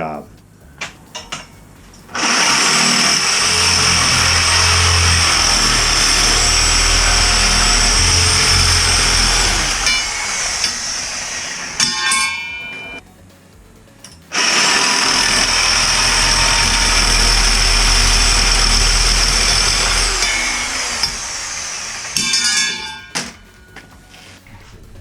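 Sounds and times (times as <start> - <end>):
electric power tool running: 2.1 - 13.0, 14.3 - 23.4.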